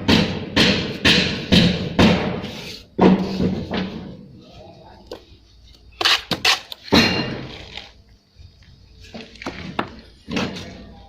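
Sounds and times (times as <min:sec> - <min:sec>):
sharp knocks and clatters: 0:00.0 - 0:04.2.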